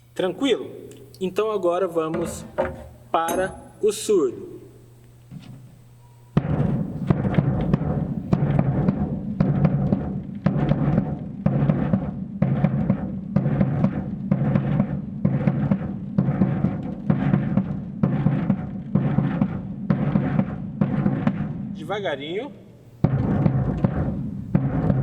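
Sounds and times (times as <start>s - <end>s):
bass drum beat: 6.4s - 21.8s, 23.0s - 25.0s.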